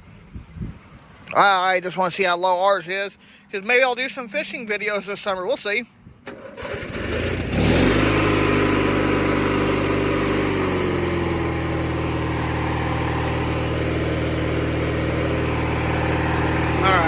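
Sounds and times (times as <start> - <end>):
riding mower engine starting: 6.2 - 17.0.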